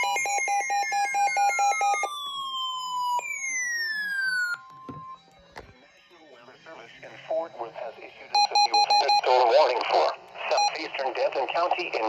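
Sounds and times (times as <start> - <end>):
rapidly pulsing beep: 8.3 - 9.6, 10.5 - 12.0.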